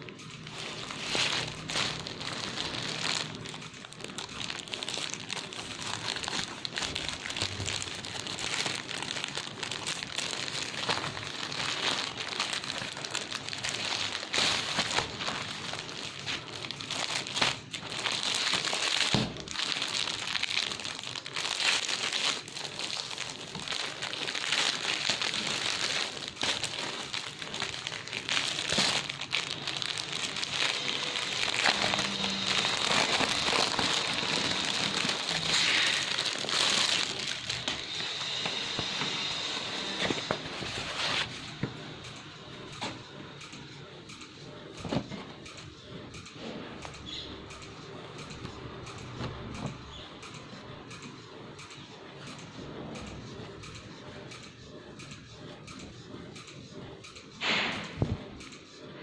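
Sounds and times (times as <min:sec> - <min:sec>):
plastic packaging crinkling: 0:00.0 - 0:41.6.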